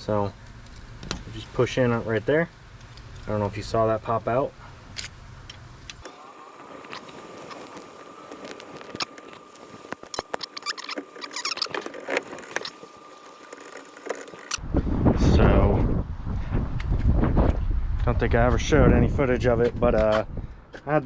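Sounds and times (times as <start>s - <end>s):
small parts clicking and rattling: 6.0s - 14.6s.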